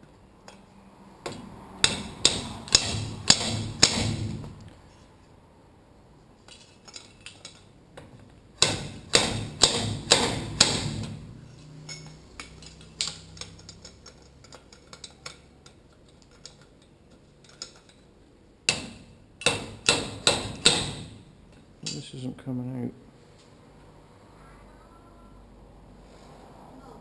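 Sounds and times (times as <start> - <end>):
hammer striking metal: 1.2 - 4.6, 8.6 - 11.3, 18.7 - 22.2
metal parts clinking: 6.4 - 7.7, 11.5 - 18.1.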